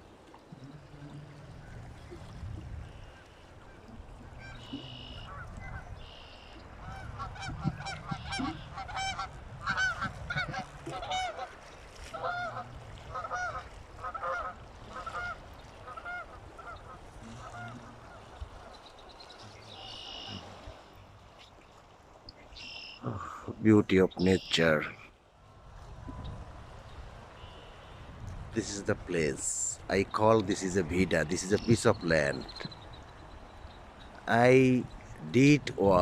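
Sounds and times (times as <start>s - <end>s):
short animal calls: 4.0s - 5.5s, 19.5s - 20.7s.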